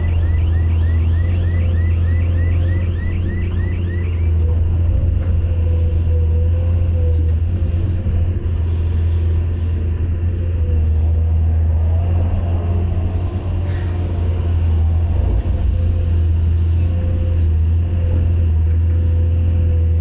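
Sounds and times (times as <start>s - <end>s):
faint wavering whine: 0.0s - 4.5s
diesel engine droning: 0.0s - 20.0s.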